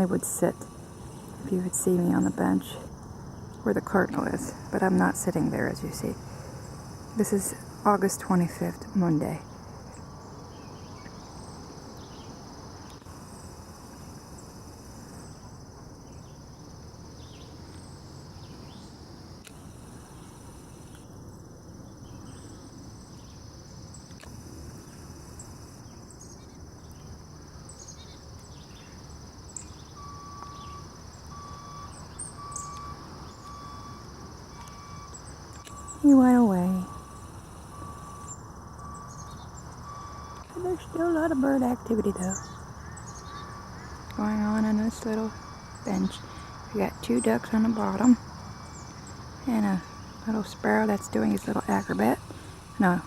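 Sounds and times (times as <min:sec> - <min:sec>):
crickets chirping: 0:00.0 - 0:53.0
bird chirps: 0:27.7 - 0:34.0, 0:37.8 - 0:40.9, 0:41.8 - 0:44.2
short beeps: 0:34.6 - 0:40.5.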